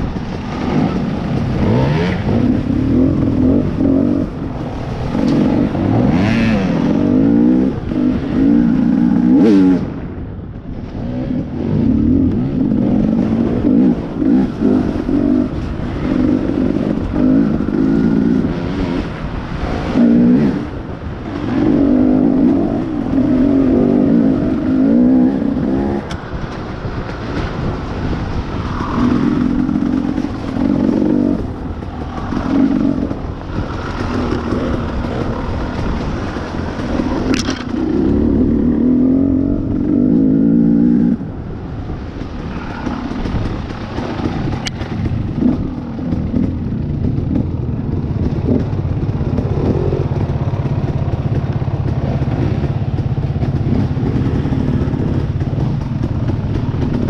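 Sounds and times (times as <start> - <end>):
dirt bike engine revving: 0.0 - 10.0, 11.0 - 41.3.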